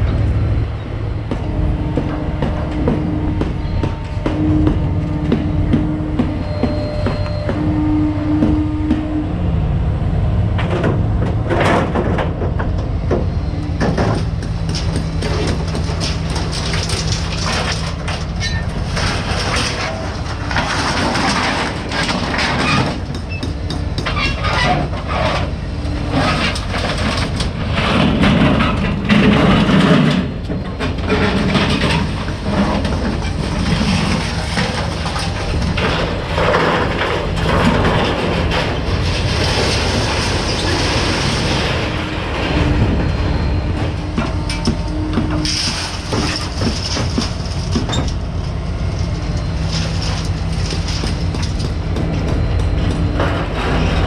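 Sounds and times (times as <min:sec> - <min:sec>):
rattling and clattering: 0:13.8 - 0:43.0, 0:43.8 - 0:54.0.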